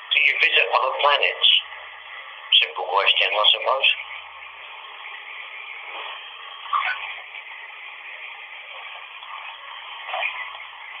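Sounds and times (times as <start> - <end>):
running water hiss: 3.9 - 11.0.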